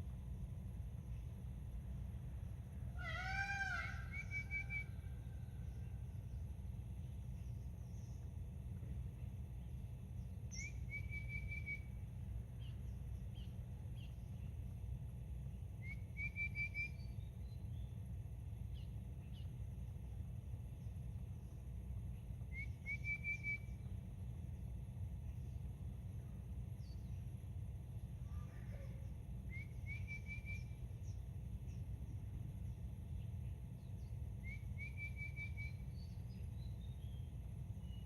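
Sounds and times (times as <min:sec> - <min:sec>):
steady low rumble: 0:00.0 - 0:38.0
bird whistling phrase: 0:04.0 - 0:05.0.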